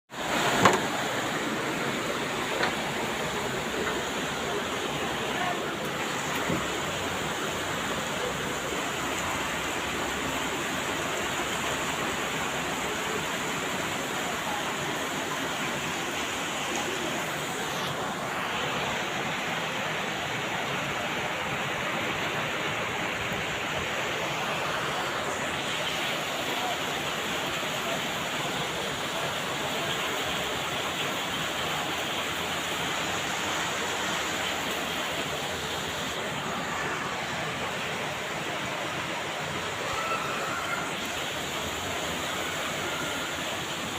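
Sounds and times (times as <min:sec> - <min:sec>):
heavy rain pouring: 0:00.1 - 0:43.9.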